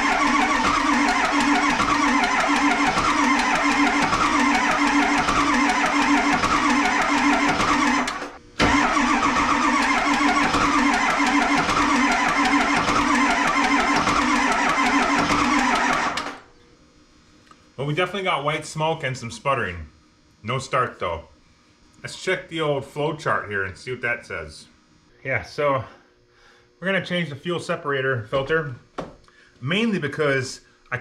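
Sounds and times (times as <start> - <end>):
diesel engine cranking on starter: 0.0 - 16.4.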